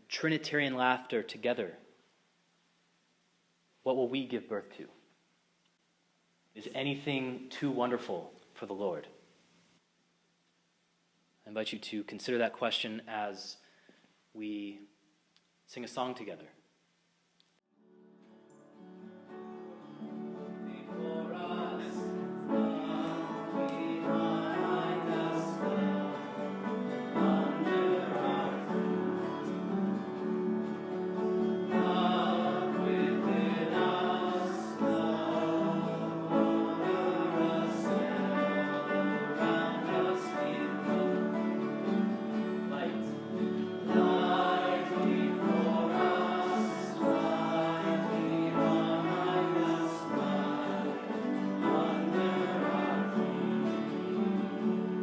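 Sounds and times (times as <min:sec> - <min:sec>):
musical accompaniment: 0:17.8 - 0:55.0
congregation singing: 0:18.5 - 0:55.0.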